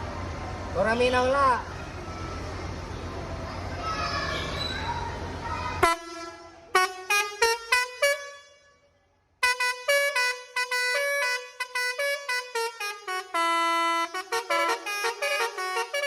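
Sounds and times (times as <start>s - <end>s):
multi-tone air horn playing tune: 5.8s - 8.8s, 9.4s - 16.0s.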